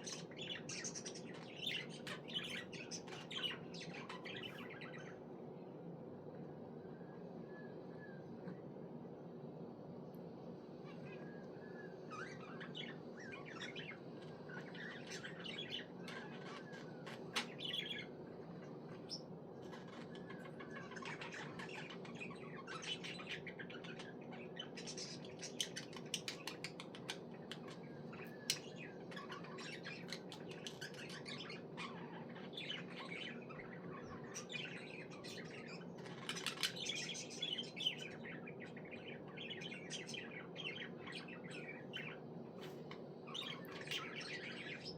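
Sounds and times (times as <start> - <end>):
low background hum: 0.0 - 44.9.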